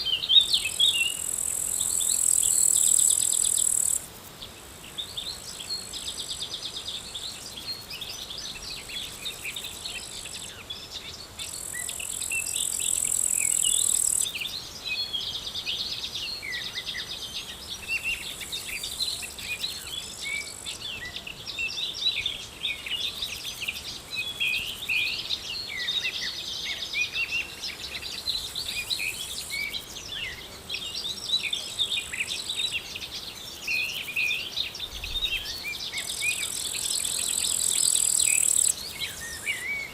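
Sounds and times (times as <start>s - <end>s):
insects trilling: 0.0s - 20.9s, 22.8s - 39.9s
small birds chirping: 0.0s - 39.9s.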